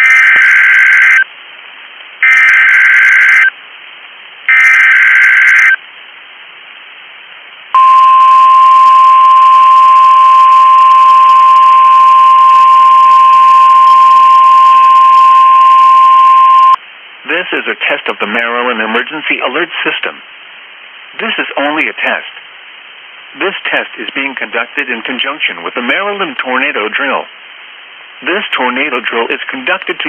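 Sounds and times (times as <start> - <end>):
warbling digital header screech: 0.0 - 1.2, 2.2 - 3.5, 4.5 - 5.8.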